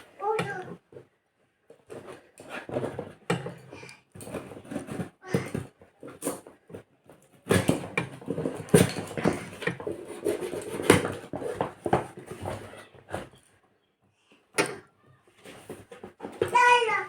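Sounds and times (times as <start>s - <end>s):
packaging rustling and scraping: 1.7s - 13.6s, 15.3s - 17.0s.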